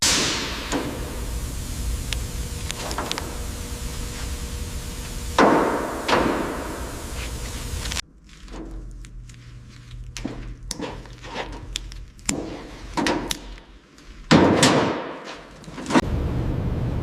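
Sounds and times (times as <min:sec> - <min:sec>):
steady noise: 0:00.0 - 0:11.5, 0:15.8 - 0:17.0.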